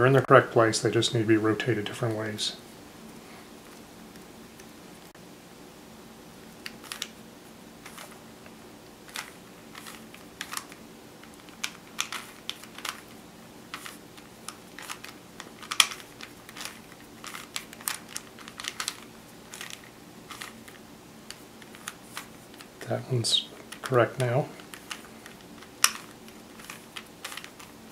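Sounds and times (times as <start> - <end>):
faint steady hum: 0.0 - 27.9
plastic puzzle cube clicking: 6.6 - 7.2, 9.1 - 22.7, 23.6 - 27.9.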